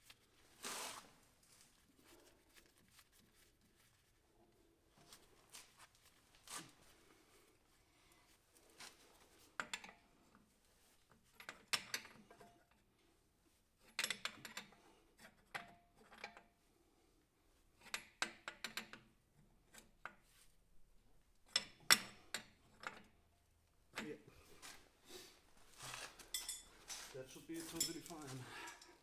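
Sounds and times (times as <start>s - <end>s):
metal tools clinking and knocking: 25.8s - 29.0s.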